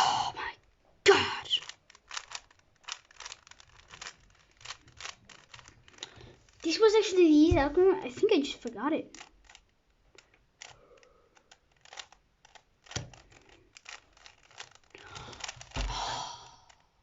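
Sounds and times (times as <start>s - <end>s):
puzzle cube clicking: 1.1s - 17.0s.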